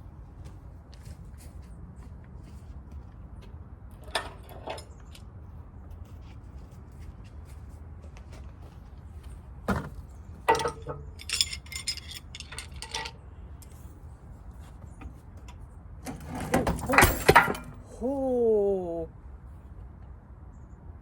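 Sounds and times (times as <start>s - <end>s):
metal tools clanking: 4.0s - 5.2s, 9.8s - 13.9s, 15.0s - 18.0s.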